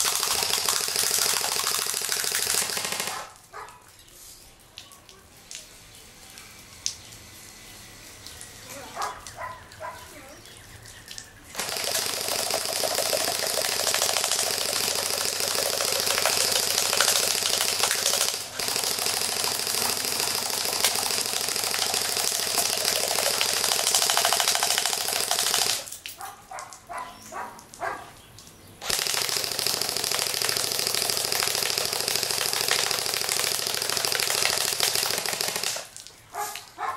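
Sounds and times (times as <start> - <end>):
rifle firing full auto: 0.0 - 3.3, 11.5 - 25.9, 28.8 - 35.9.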